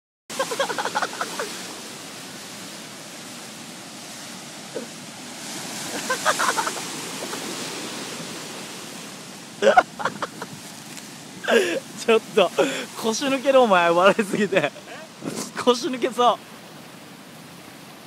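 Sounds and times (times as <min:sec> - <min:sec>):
waves roaring: 0:00.3 - 0:18.0
wind: 0:00.3 - 0:18.0
person's voice: 0:11.5 - 0:16.4.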